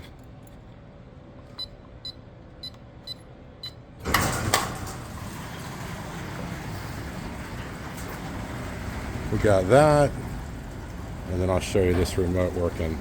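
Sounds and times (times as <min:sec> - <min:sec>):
keypad beeps: 0:01.6 - 0:03.8.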